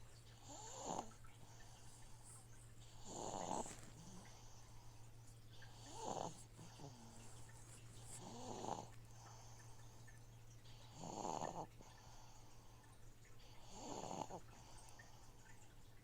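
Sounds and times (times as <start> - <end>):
soft snoring: 0.0 - 9.9, 10.6 - 15.4
aquarium filter humming: 0.0 - 16.0.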